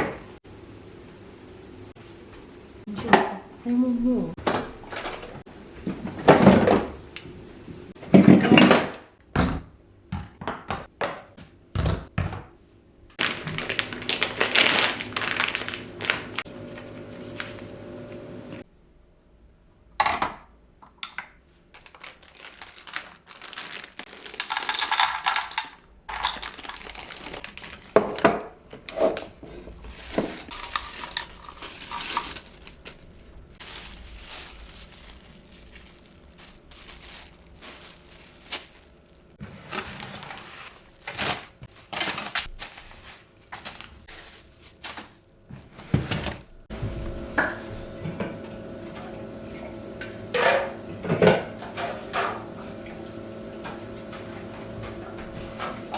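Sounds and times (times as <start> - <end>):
packages and containers clattering: 4.5 - 7.0, 13.2 - 16.5, 21.8 - 46.7
plastic packaging rustling: 13.2 - 16.5, 21.7 - 45.5.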